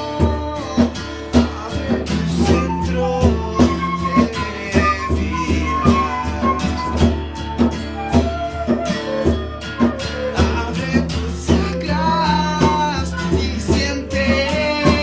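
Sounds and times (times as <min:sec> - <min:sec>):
guitar playing: 0:00.0 - 0:15.0
percussive beat: 0:00.0 - 0:15.0.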